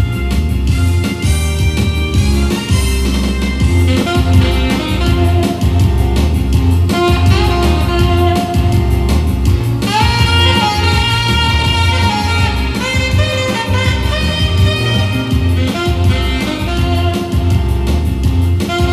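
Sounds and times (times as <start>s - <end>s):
band backing track: 0.0s - 18.9s
saxophone note sliding up: 1.1s - 17.8s.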